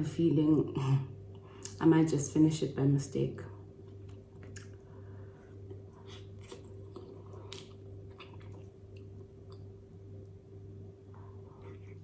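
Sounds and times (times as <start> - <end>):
steady low hum: 0.0 - 12.0
close-up chewing: 3.8 - 10.4.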